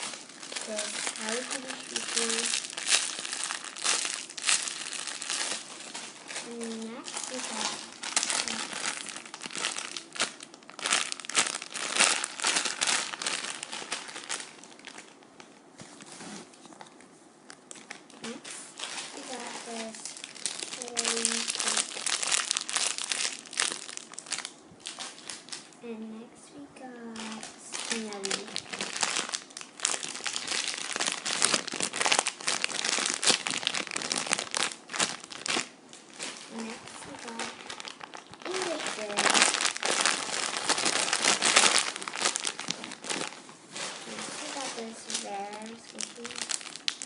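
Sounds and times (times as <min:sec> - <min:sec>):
plastic packaging crinkling: 0:00.0 - 0:25.8, 0:26.9 - 0:47.0.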